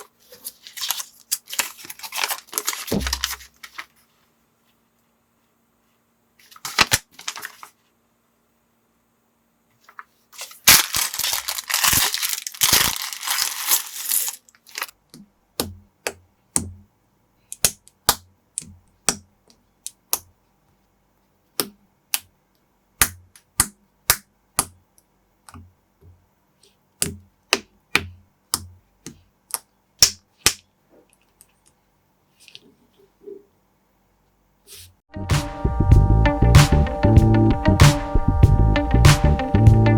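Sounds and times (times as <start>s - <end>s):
plastic bag crinkling: 0.0s - 4.0s, 6.4s - 7.8s, 10.3s - 15.0s.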